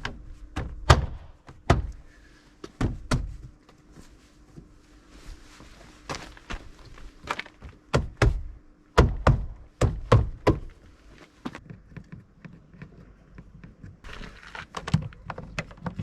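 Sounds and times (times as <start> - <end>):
knocks on plastic car door panel: 9.0 - 10.7.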